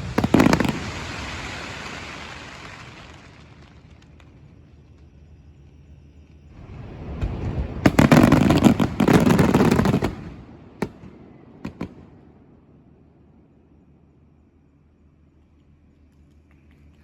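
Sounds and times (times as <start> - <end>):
fireworks bangs and crackling: 0.0 - 5.1, 6.5 - 12.5
fireworks rumble: 0.0 - 17.0.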